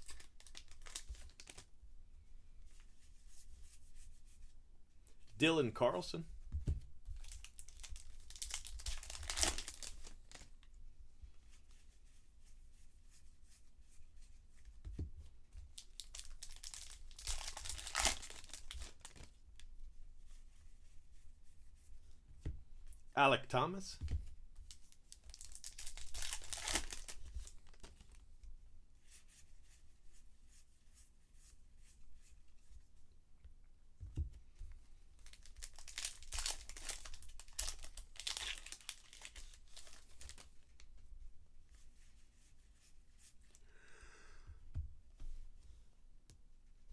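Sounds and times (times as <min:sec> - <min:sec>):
foil wrapper crinkling: 0:00.0 - 0:01.7, 0:07.2 - 0:10.5, 0:15.8 - 0:19.3, 0:24.7 - 0:28.2, 0:35.2 - 0:40.8.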